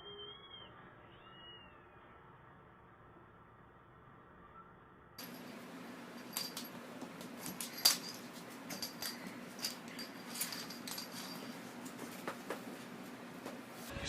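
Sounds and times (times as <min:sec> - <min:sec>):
light metallic jingling: 0:05.2 - 0:13.3
steady low hum: 0:05.2 - 0:13.9.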